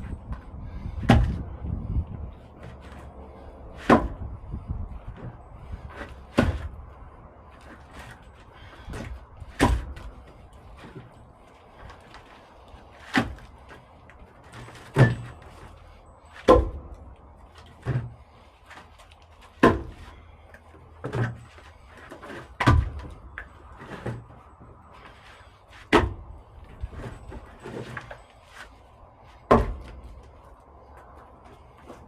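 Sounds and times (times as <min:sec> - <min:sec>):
wooden thunks of firewood: 0:01.0 - 0:01.4, 0:03.8 - 0:04.2, 0:08.9 - 0:10.1, 0:16.4 - 0:16.9, 0:19.5 - 0:20.0, 0:22.2 - 0:23.1, 0:25.9 - 0:26.2, 0:29.5 - 0:30.0.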